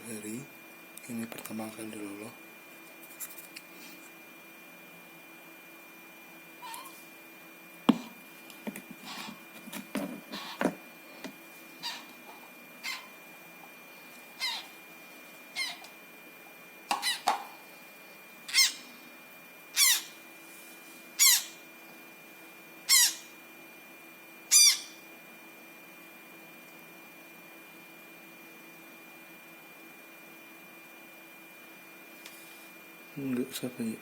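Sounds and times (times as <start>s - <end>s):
parrot chick begging peeps: 10.3s - 10.6s, 11.8s - 12.2s, 12.8s - 13.2s, 14.4s - 14.8s, 15.5s - 15.9s, 16.9s - 17.3s, 18.5s - 18.9s, 19.7s - 20.2s, 21.2s - 21.6s, 22.9s - 23.4s, 24.5s - 25.0s.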